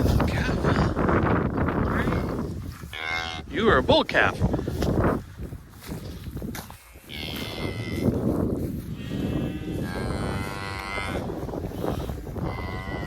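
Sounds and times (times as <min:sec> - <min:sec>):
cow mooing: 0:07.1 - 0:08.1, 0:09.0 - 0:11.4, 0:12.4 - 0:13.0.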